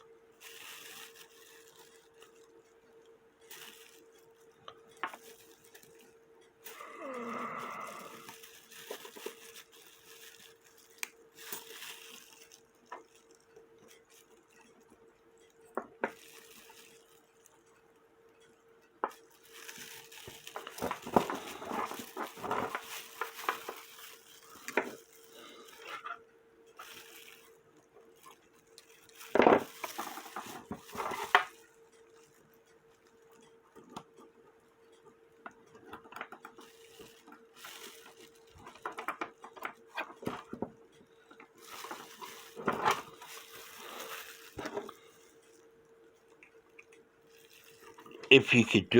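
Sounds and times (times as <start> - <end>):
faint hum: 0.0 - 12.5.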